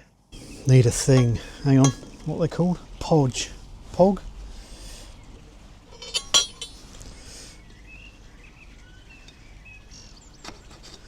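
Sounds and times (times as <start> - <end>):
metal parts clinking: 5.9 - 6.8.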